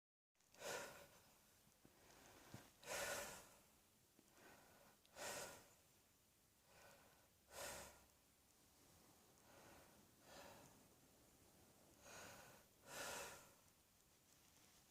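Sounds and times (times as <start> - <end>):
person breathing heavily: 0.5 - 5.8, 6.6 - 8.1, 8.9 - 13.7.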